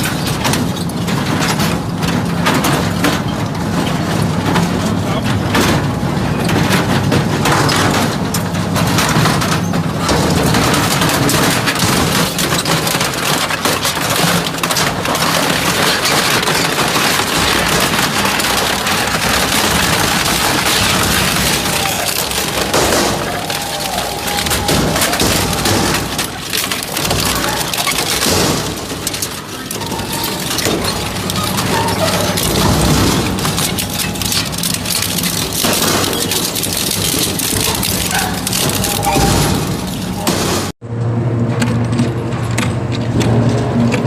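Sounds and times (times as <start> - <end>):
industrial shredder crushing scrap: 0.0 - 44.0.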